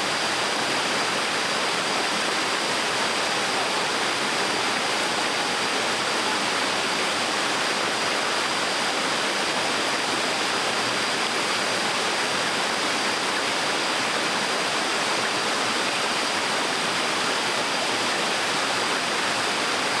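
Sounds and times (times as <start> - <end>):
waterfall splashing: 0.0 - 20.0.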